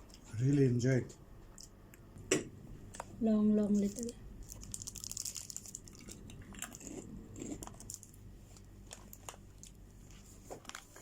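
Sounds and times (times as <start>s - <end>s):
person chewing crunchy snack: 4.5s - 9.8s.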